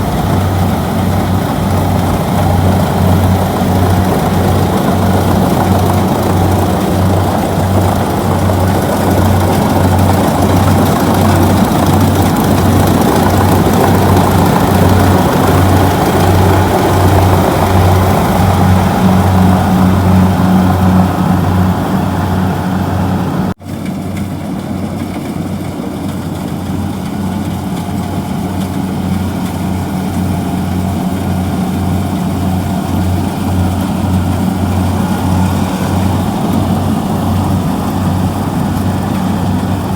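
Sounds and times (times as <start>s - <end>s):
diesel engine pulsing hum: 0.0s - 39.9s.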